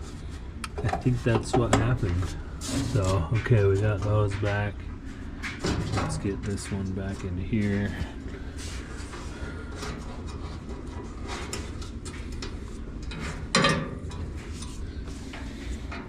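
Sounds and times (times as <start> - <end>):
low steady hum: 0.0 - 16.0
parts clicking and knocking: 11.0 - 16.0.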